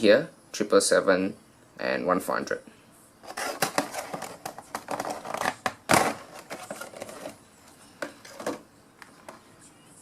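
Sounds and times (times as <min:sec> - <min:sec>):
plastic packaging crinkling: 0:03.2 - 0:07.4.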